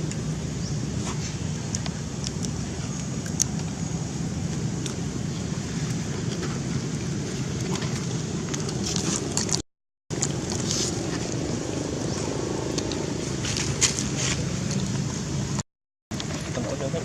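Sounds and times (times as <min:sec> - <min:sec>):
low rumbling background noise: 0:00.0 - 0:15.6.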